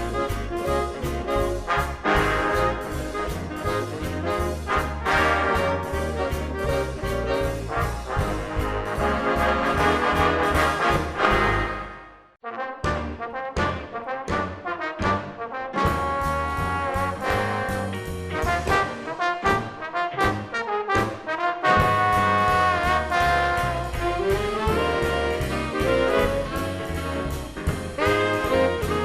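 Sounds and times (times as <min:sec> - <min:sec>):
big band brass playing: 0:00.0 - 0:29.0.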